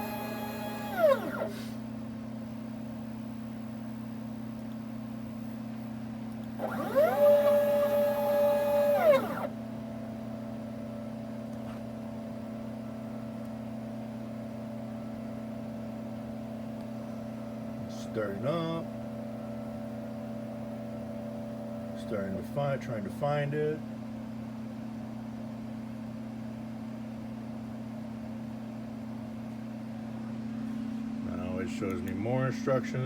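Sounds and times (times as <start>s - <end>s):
stepper motors whining: 0.0s - 1.6s, 6.6s - 9.5s
low electrical hum: 0.0s - 33.0s.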